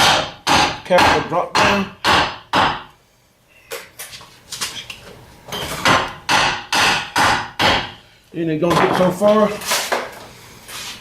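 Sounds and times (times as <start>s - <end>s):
hammer striking steel: 5.8s - 8.0s.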